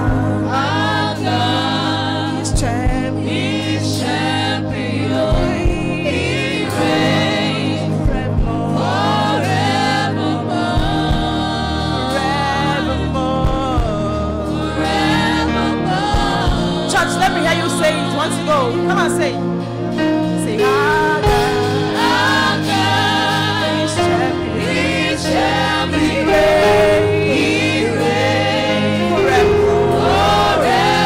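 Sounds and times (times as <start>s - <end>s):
bass and keyboard chords: 0.0s - 31.0s
gospel choir singing: 0.0s - 31.0s
steady drum beat: 2.5s - 3.4s, 5.1s - 7.3s, 8.0s - 8.9s, 10.6s - 11.8s, 13.3s - 14.2s, 15.9s - 18.4s, 21.3s - 31.0s.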